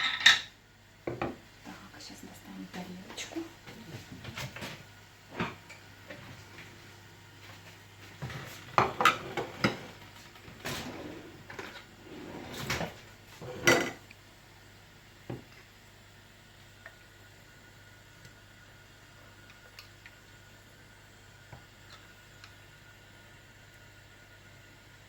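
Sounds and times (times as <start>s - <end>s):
dishes clattering: 0.0s - 0.5s, 8.8s - 10.0s, 12.4s - 14.0s.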